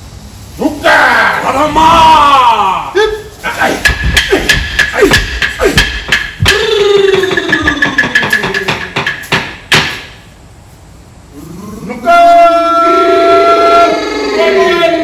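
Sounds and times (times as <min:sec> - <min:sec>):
sticks knocking in a beat: 0:03.8 - 0:10.2.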